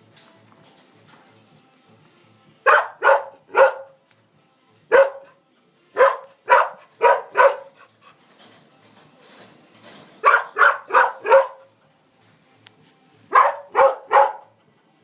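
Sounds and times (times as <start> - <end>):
dog barking: 2.6 - 4.0, 4.9 - 5.4, 6.0 - 7.8, 10.2 - 11.7, 13.3 - 14.6.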